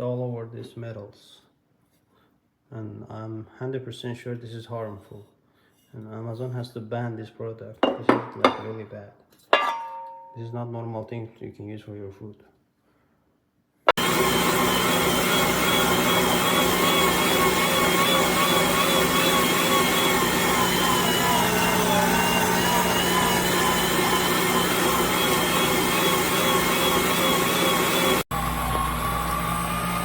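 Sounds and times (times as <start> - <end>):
meat grinder motor whining: 14.0 - 30.0.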